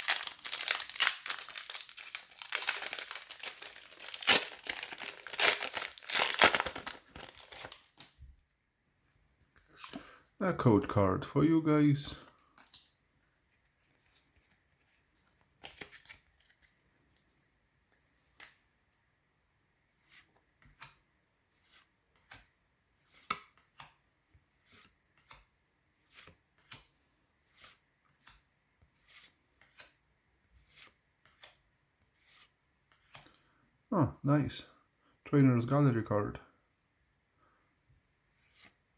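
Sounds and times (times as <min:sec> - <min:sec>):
cards flicking and rustling: 0:00.0 - 0:08.2, 0:13.9 - 0:16.8, 0:21.6 - 0:24.0, 0:29.0 - 0:30.0, 0:30.6 - 0:31.6.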